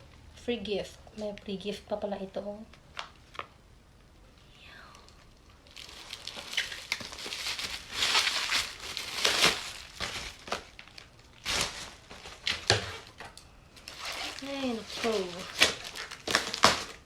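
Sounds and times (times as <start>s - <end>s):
plastic packaging crinkling and tearing: 5.2s - 17.0s.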